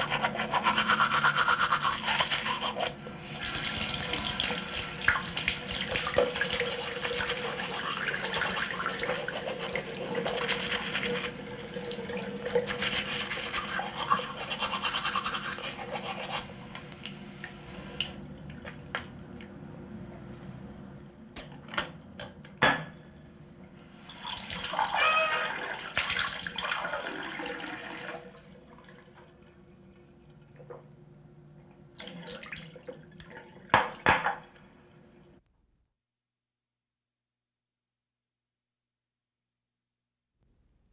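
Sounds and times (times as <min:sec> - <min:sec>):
toothbrush scrubbing teeth: 0:00.0 - 0:16.8
water sloshing rinsing: 0:32.0 - 0:34.0.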